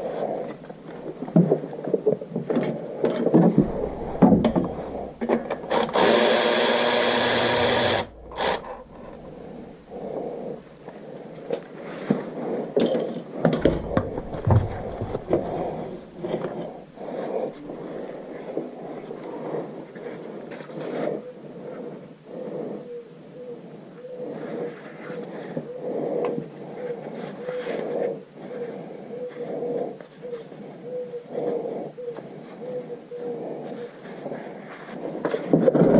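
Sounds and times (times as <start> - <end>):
metal tool clinks and knocks: 2.5 - 3.8, 12.8 - 14.3
power tool running: 3.6 - 10.0.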